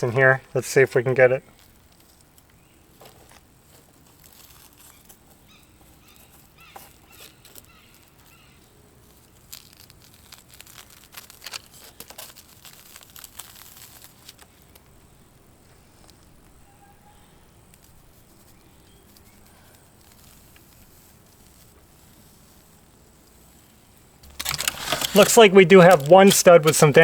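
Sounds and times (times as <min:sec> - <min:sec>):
rustling and crinkling of debris: 0:01.4 - 0:16.6, 0:17.7 - 0:27.0
small clicks: 0:24.2 - 0:27.0.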